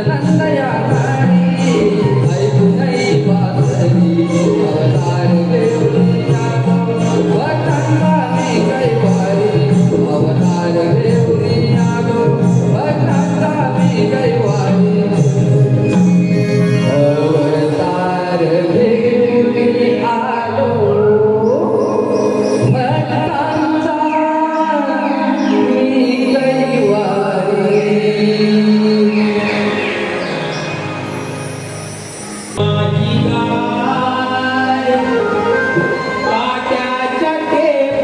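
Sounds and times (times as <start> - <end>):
folk theatre music melody: 0.0 - 38.0
voices singing devotional song: 16.2 - 30.6.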